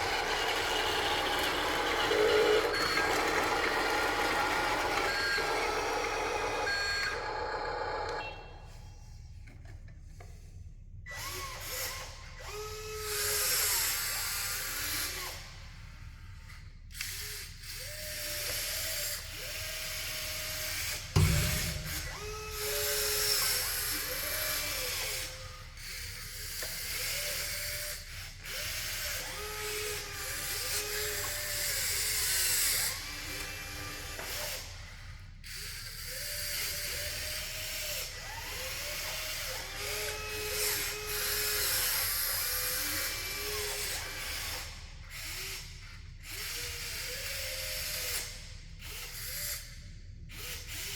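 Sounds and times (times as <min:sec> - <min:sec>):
electric motors whining: 0:00.0 - 0:08.5, 0:35.7 - 0:45.7
sharp knock: 0:21.2 - 0:23.0.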